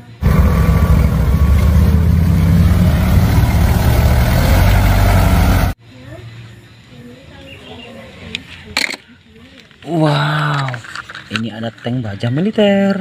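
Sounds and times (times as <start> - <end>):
vehicle engine running: 0.0 - 5.8.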